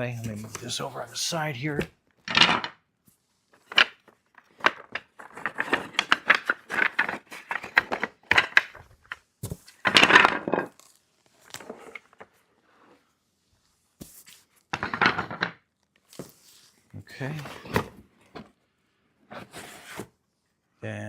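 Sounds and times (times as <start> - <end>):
wooden pieces clattering: 2.2 - 2.8, 3.6 - 12.4, 14.7 - 15.7.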